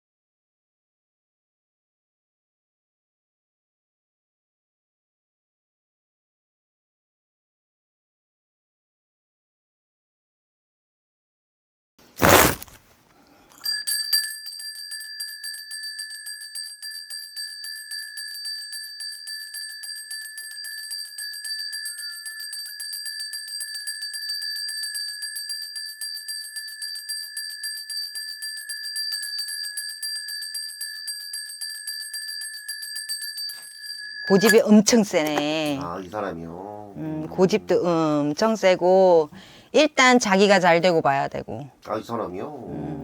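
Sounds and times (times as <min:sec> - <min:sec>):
brass bells jingling: 0:13.6 - 0:36.4.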